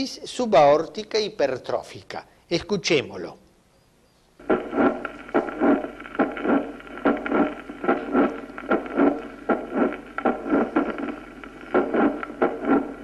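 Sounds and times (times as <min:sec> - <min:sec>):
heart murmur: 0:04.4 - 0:13.0
heart valve click: 0:04.4 - 0:13.0
heartbeat through stethoscope: 0:04.4 - 0:13.0.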